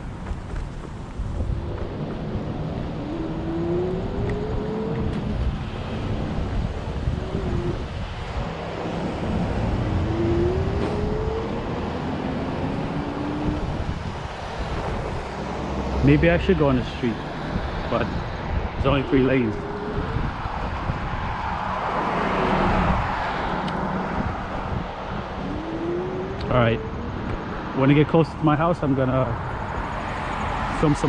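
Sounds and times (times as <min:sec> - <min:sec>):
scooter wheels rumbling and rattling: 0:00.0 - 0:10.0
wind on microphone: 0:00.0 - 0:28.1
rising motor whine: 0:01.3 - 0:16.6, 0:17.9 - 0:28.9.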